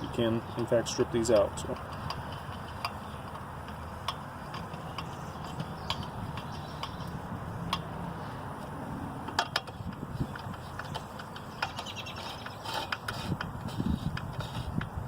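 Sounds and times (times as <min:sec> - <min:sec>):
hand tool clicking on screws: 0:01.0 - 0:07.9.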